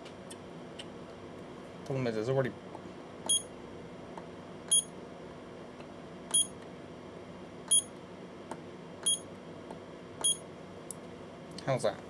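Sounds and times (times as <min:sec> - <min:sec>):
spot welder beeping: 0:03.3 - 0:03.5, 0:04.7 - 0:04.9, 0:06.3 - 0:06.6, 0:07.7 - 0:08.0, 0:09.0 - 0:09.3, 0:10.2 - 0:10.5.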